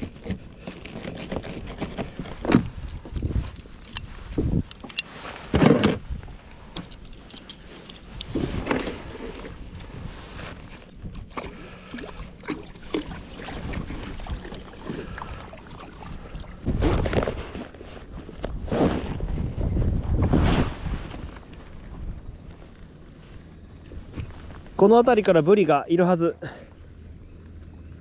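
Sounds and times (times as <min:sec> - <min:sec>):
water splashing around kayak: 0:08.2 - 0:19.4.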